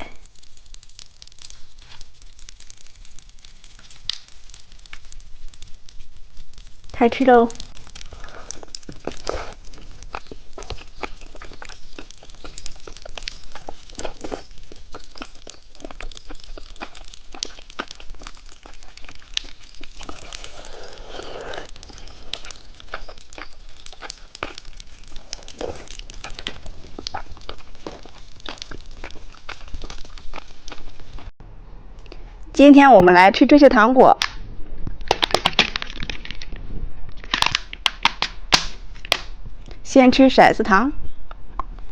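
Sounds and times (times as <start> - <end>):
chewing popping candy: 0.0 - 31.3, 35.0 - 36.5.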